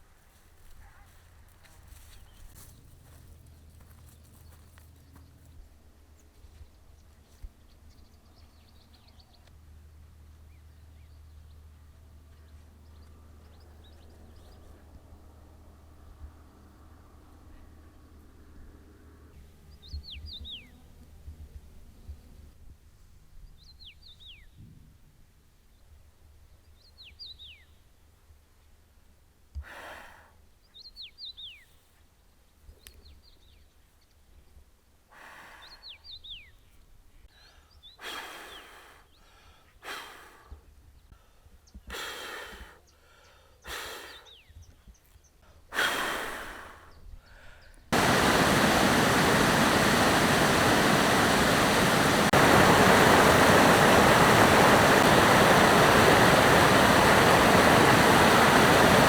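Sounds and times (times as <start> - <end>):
running water rushing: 48.0 - 59.0.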